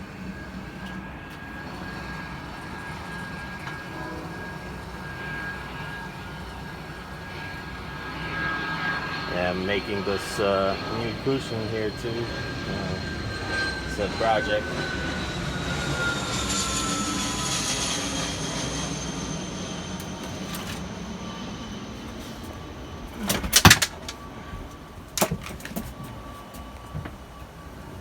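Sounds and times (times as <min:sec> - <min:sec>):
passing engine whine: 0:00.0 - 0:28.0.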